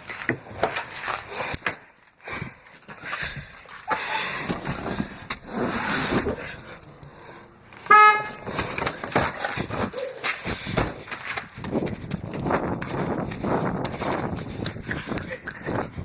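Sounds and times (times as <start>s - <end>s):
car horn toot: 7.9s - 8.5s.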